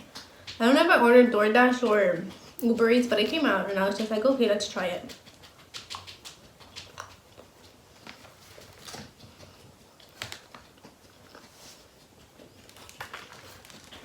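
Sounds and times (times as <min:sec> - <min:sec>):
mouth clicks and crunches: 0:01.6 - 0:14.0
person chewing food: 0:05.1 - 0:14.0.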